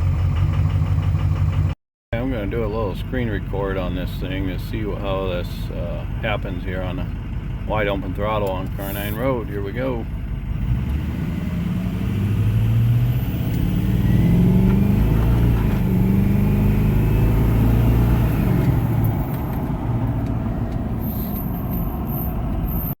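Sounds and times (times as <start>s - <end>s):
pickup engine accelerating hard: 4.8s - 22.9s.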